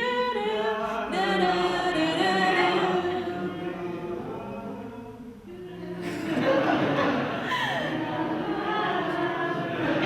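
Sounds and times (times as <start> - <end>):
person singing wordless tune: 0.0 - 3.6.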